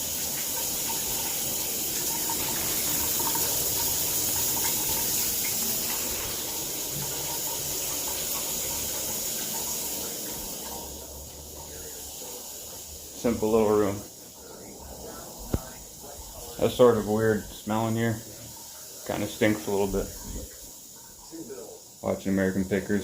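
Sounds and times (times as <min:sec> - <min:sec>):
water running from a tap: 0:00.0 - 0:23.0.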